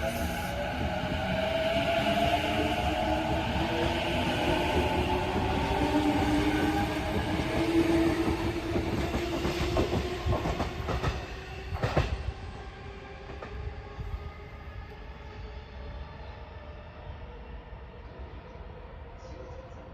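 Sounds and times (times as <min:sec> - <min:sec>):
train wheel rumble: 0:00.0 - 0:15.0.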